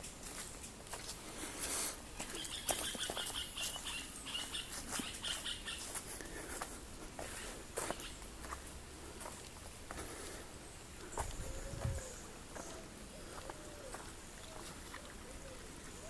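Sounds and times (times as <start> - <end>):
small bird calling: 2.2 - 6.0, 7.3 - 8.2, 11.0 - 16.0.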